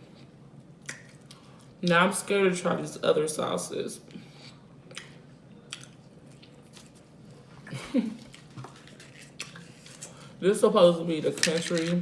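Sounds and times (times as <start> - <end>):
person chewing: 4.4 - 7.4.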